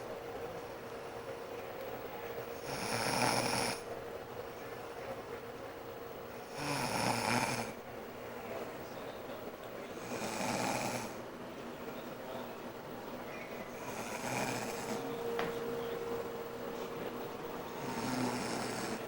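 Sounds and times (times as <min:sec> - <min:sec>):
woman snoring: 0:02.6 - 0:03.8, 0:06.5 - 0:07.8, 0:10.0 - 0:11.2, 0:13.8 - 0:15.1, 0:17.8 - 0:19.0.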